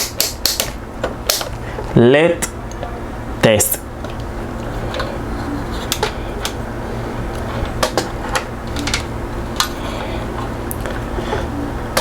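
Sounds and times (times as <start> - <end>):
multimeter probes clicking: 0.0 - 1.6, 7.3 - 9.8.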